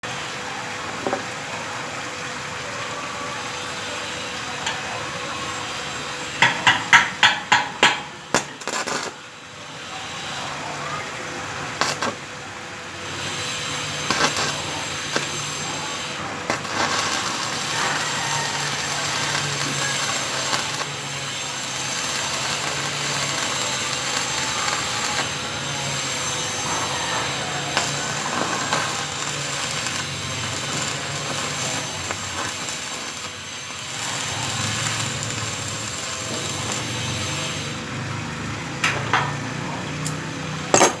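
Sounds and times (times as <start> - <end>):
hammer blows on metal: 6.4 - 8.6.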